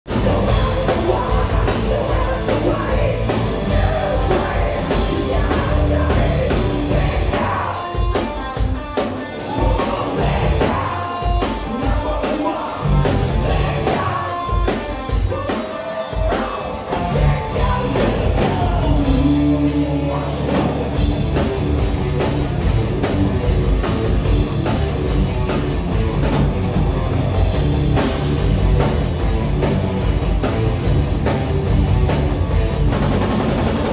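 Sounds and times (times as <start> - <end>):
person singing: 0.1 - 8.4, 9.4 - 20.7
drum kit beat: 0.1 - 33.9
electric guitars: 0.1 - 33.9.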